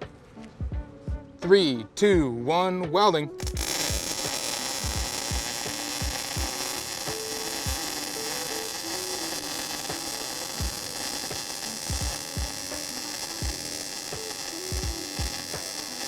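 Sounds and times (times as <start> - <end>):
welding arc crackling hiss: 3.4 - 16.0
welding arc pops: 3.4 - 16.0.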